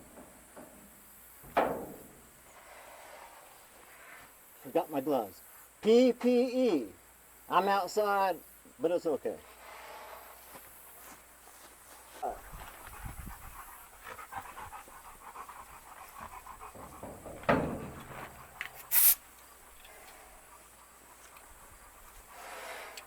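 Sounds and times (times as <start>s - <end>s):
dog panting: 12.3s - 23.0s
sharp burst of hiss: 18.7s - 19.3s.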